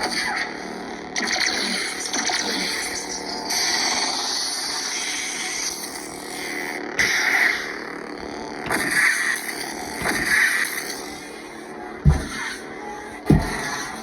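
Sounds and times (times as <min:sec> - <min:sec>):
lightsaber electronic hum: 0:00.0 - 0:14.0
lightsaber hits: 0:10.0 - 0:10.7, 0:12.0 - 0:12.6.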